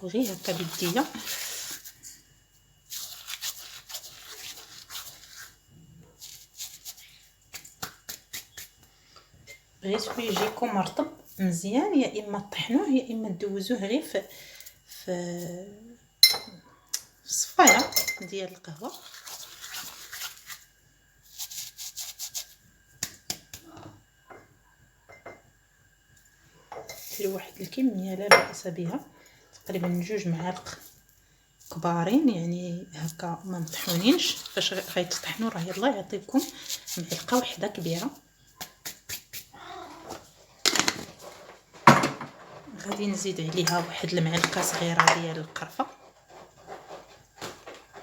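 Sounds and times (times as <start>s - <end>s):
dry leaves crumbled by hand: 2.9s - 5.5s.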